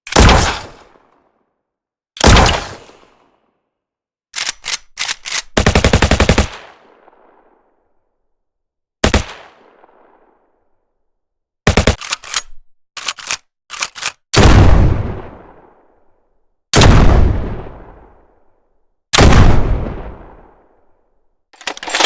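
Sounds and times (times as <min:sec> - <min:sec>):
gunshots: 0:00.1 - 0:00.8, 0:02.2 - 0:03.0, 0:09.0 - 0:09.5, 0:21.6 - 0:22.0
rapid automatic gunfire: 0:05.5 - 0:06.6, 0:09.0 - 0:09.4, 0:11.7 - 0:12.2.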